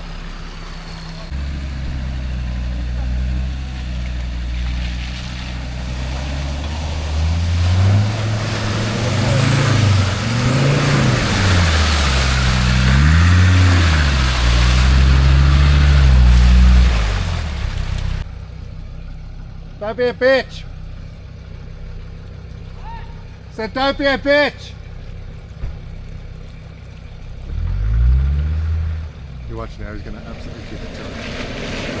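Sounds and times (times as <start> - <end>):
mud and water rushing hiss: 0.0 - 18.2, 29.9 - 32.0
engine revving under load: 0.0 - 18.3, 27.4 - 32.0.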